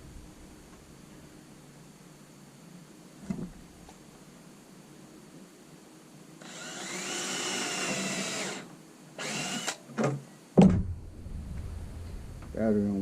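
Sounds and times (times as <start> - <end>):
cordless drill whining: 6.4 - 9.8
knock: 10.6 - 10.9.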